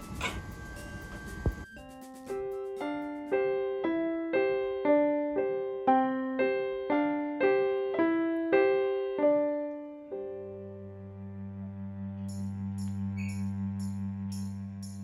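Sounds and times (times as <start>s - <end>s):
keyboard playing chords: 0.0s - 14.9s.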